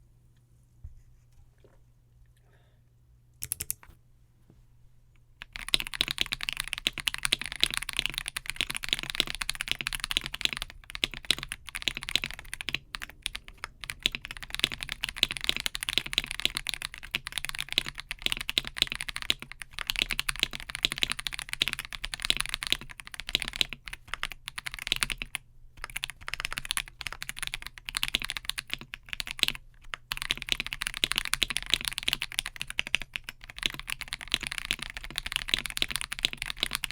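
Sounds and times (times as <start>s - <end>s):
fast typing on mechanical keyboard: 3.4s - 3.8s, 5.4s - 36.9s.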